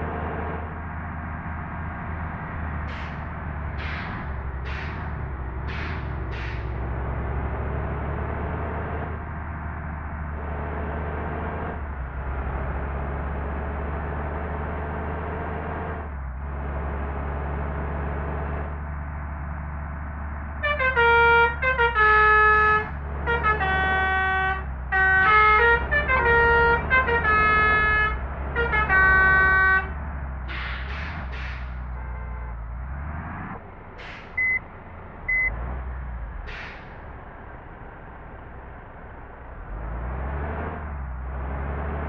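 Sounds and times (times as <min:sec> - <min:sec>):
low engine rumble: 0:00.0 - 0:42.0
bus musical horn melody: 0:20.6 - 0:30.0, 0:32.0 - 0:32.6
faint high beeps: 0:34.4 - 0:34.6, 0:35.3 - 0:35.5.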